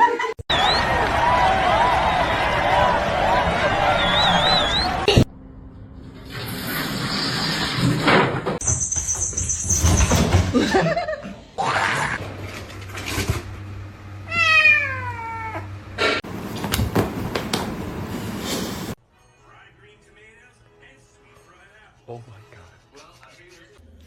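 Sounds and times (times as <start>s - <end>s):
cat meowing: 14.3s - 15.7s.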